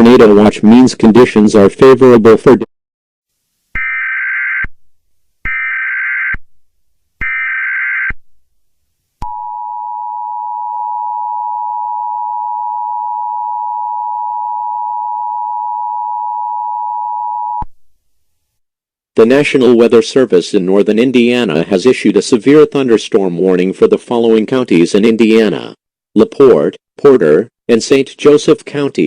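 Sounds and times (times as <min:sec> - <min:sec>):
screeching digital code bursts: 0:03.8 - 0:04.7, 0:07.2 - 0:08.2.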